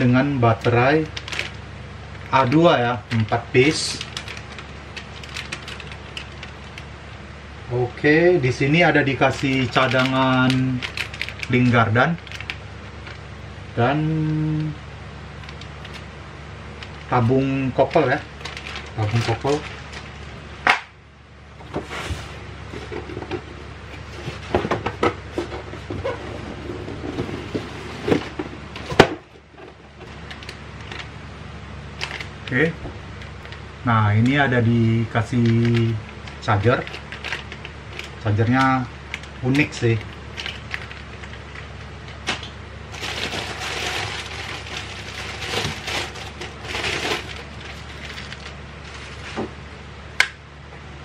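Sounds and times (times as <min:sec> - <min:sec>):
plastic bags rustling: 0:00.6 - 0:06.9, 0:09.1 - 0:13.3, 0:16.7 - 0:20.4, 0:35.6 - 0:49.7
small plastic parts clicking: 0:02.2 - 0:06.8, 0:09.3 - 0:13.2, 0:32.0 - 0:32.6.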